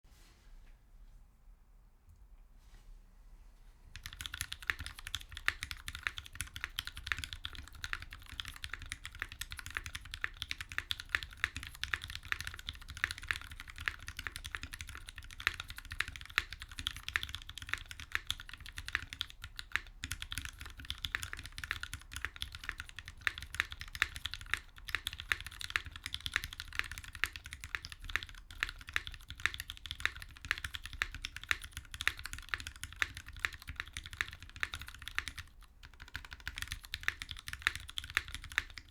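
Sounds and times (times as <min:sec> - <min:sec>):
mechanical keyboard typing: 0:04.0 - 0:38.9.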